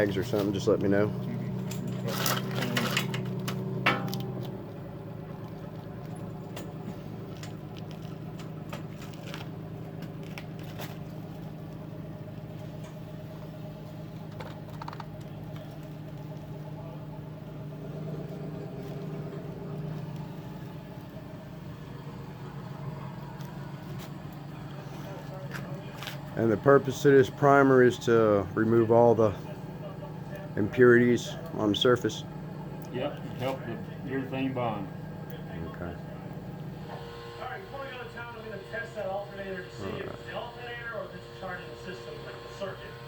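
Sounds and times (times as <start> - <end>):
low mechanical hum: 0.0 - 43.0.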